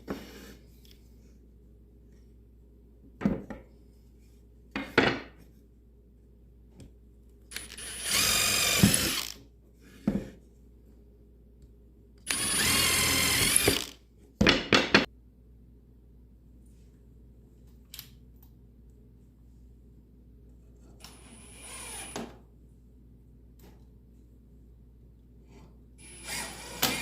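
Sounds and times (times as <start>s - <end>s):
power drill drilling wood: 7.5s - 9.4s, 12.3s - 14.0s, 21.1s - 22.2s, 26.0s - 27.0s
knocks of handling drill and wood: 7.6s - 9.4s, 12.3s - 15.1s, 26.3s - 27.0s.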